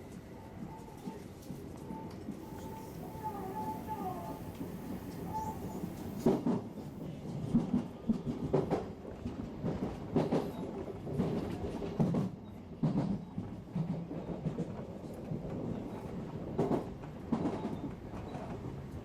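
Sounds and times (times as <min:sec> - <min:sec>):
train rumble: 0:00.1 - 0:19.0.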